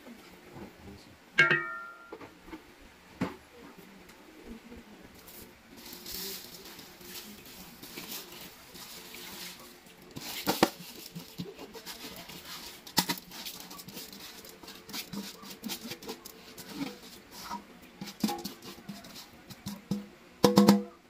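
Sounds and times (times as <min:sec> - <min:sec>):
cookware and utensils clattering: 0:01.4 - 0:02.3, 0:05.8 - 0:21.0.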